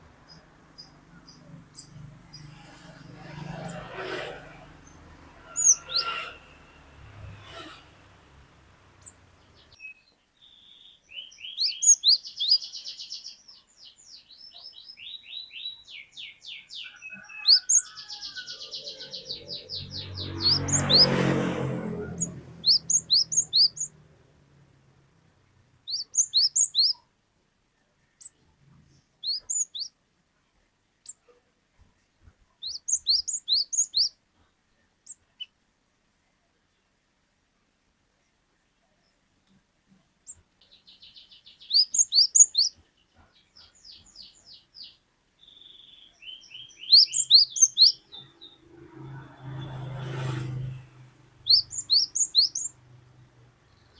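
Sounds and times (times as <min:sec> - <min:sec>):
bird chattering trills: 0:05.4 - 0:06.4, 0:22.1 - 0:24.0, 0:25.9 - 0:27.0, 0:29.2 - 0:29.9, 0:32.6 - 0:34.1, 0:41.6 - 0:42.8, 0:46.8 - 0:48.3, 0:51.4 - 0:52.7.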